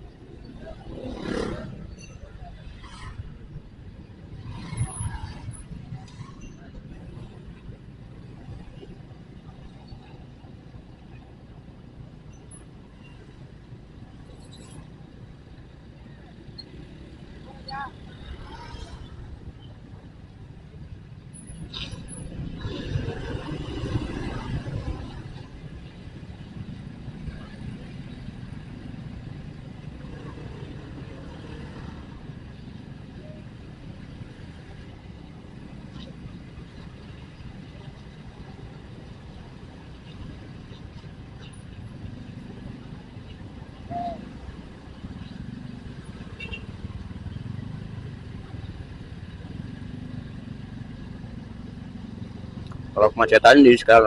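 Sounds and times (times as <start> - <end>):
motorcycle engine rumbling: 0.0 - 54.0.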